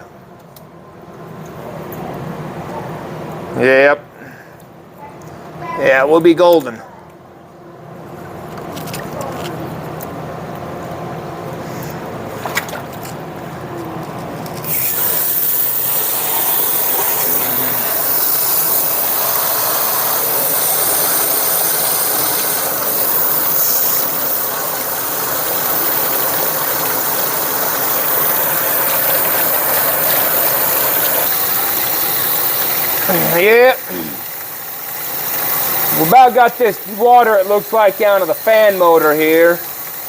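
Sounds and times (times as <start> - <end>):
water spray hissing and spattering: 14.7 - 40.0.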